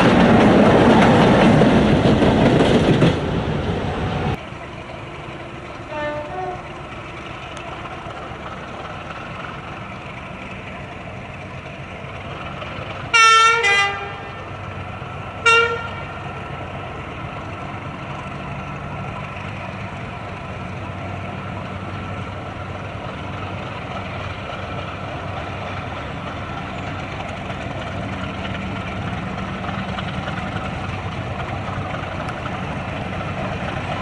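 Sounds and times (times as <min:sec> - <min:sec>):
train passing loudly: 0:00.0 - 0:34.0
locomotive horn blasts: 0:05.9 - 0:06.7, 0:13.1 - 0:14.4, 0:15.4 - 0:16.2.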